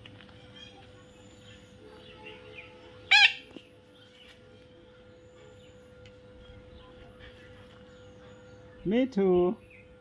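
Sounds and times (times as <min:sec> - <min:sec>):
steady faint hum: 0:00.0 - 0:10.0
parrot high call: 0:03.0 - 0:03.5.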